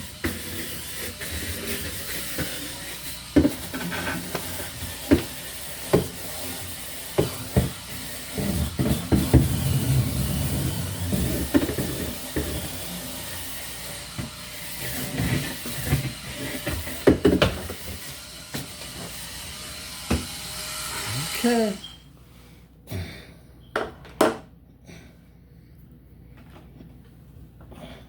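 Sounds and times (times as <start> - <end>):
scrubbing and rubbing: 0.0 - 13.0.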